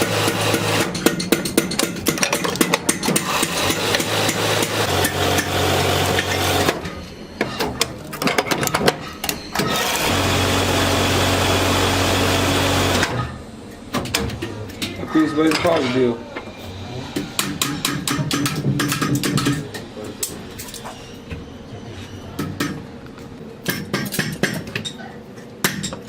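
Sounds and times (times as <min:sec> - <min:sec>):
machine running: 0:00.0 - 0:01.0, 0:02.6 - 0:07.2, 0:09.2 - 0:13.4
rapid metal tapping and clattering: 0:00.8 - 0:04.5
motor hum: 0:09.6 - 0:13.4.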